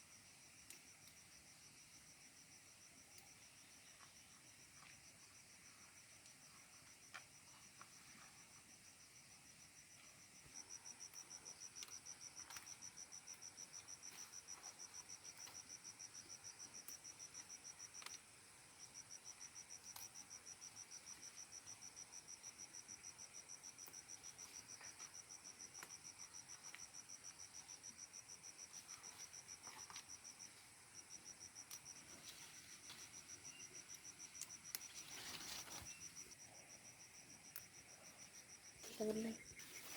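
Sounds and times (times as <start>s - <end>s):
pulsing insect trill: 1.4s - 39.9s
high insect buzz: 18.8s - 39.9s.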